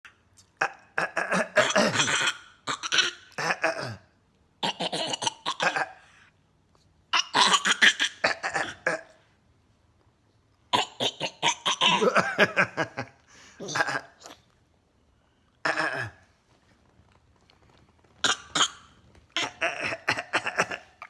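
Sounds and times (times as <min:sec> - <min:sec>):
harsh throat clearing: 0:00.6 - 0:06.1, 0:07.2 - 0:09.2, 0:10.7 - 0:14.4, 0:15.6 - 0:16.3, 0:18.2 - 0:21.0.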